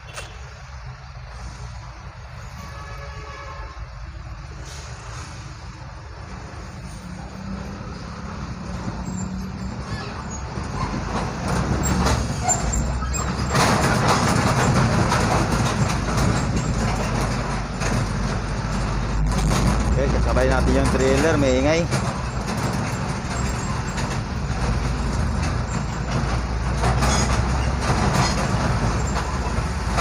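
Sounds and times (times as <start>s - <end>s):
heavy truck engine rumble: 0.0s - 30.0s
hiss-like noise: 4.4s - 5.9s.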